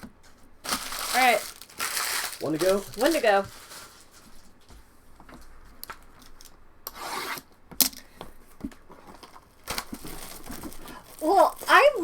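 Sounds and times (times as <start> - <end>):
cardboard and wrappers rubbing: 0.2 - 4.7, 8.9 - 12.0.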